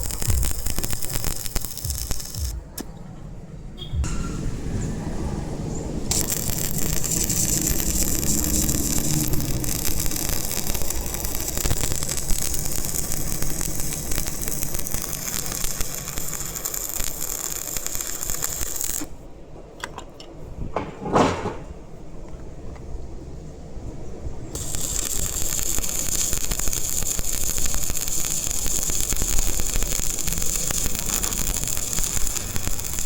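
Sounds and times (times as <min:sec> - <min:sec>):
welding arc crackling: 0:00.0 - 0:02.9, 0:06.0 - 0:19.1, 0:24.5 - 0:33.0.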